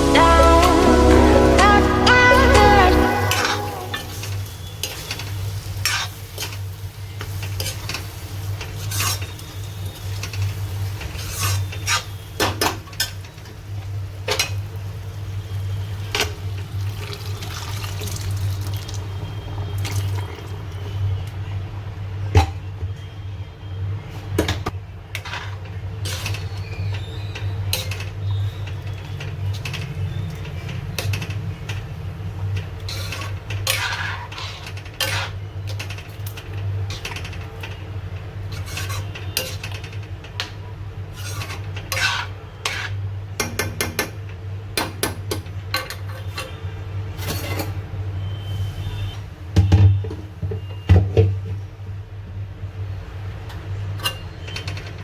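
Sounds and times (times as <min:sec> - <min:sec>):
metal utensils clinking on pot: 0:38.5 - 0:40.0, 0:45.7 - 0:46.6.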